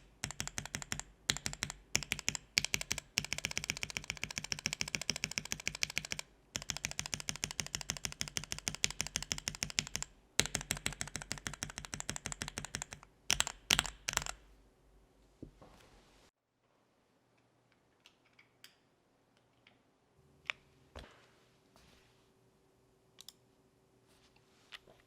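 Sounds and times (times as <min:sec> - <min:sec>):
mechanical keyboard clacking: 0:00.0 - 0:14.4.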